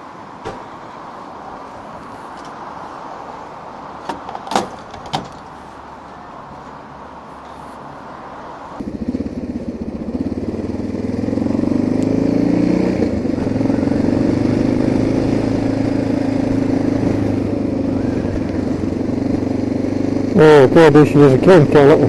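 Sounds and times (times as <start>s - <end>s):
motorcycle engine accelerating: 8.8s - 22.0s.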